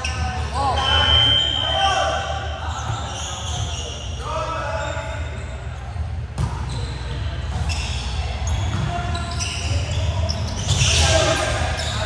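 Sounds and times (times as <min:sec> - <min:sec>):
voices calling out in echoing hall: 0:00.0 - 0:12.0
basketball bouncing on court: 0:07.5 - 0:11.0.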